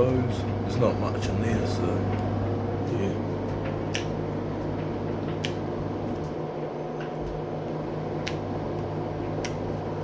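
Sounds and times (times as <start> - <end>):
washing machine spinning: 0.0 - 10.0.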